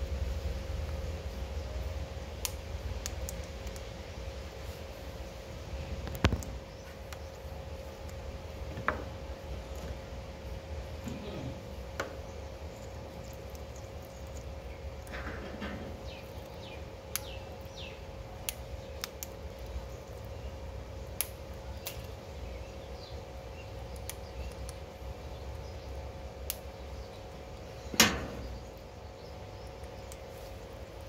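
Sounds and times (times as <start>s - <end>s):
steady low hum: 0.0s - 31.0s
parakeet pecking clicks: 2.4s - 3.9s, 6.0s - 7.3s, 17.1s - 17.4s, 18.4s - 19.7s, 21.1s - 22.2s, 23.8s - 24.8s.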